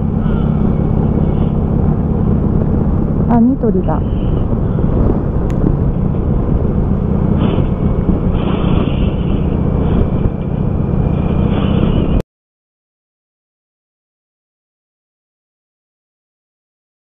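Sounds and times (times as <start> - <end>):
moving road vehicle rumble: 0.0 - 12.2
wind noise: 0.0 - 12.2.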